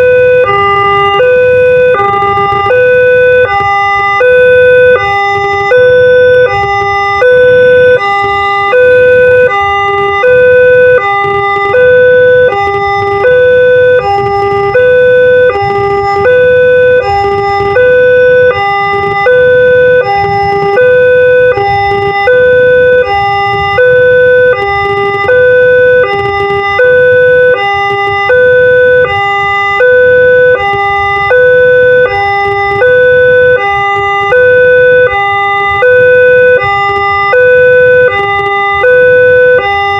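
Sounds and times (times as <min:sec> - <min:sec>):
level crossing two-tone siren: 0:00.0 - 0:39.9.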